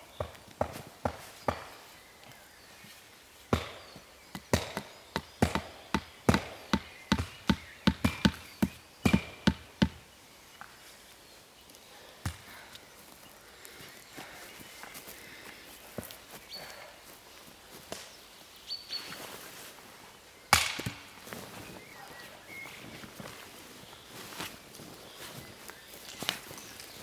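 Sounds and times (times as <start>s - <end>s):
axe chopping wood: 0.2s - 1.8s, 3.5s - 10.0s, 12.3s - 12.5s, 20.6s - 21.2s.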